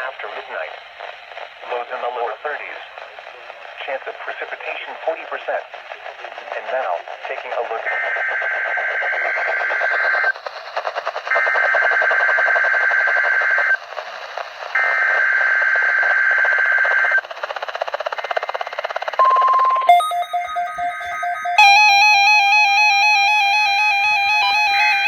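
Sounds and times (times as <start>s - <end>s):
two-tone digital data screeching: 19.2s - 22.6s
electronic music with keyboard tones: 19.2s - 22.9s
steady beep: 19.2s - 23.0s.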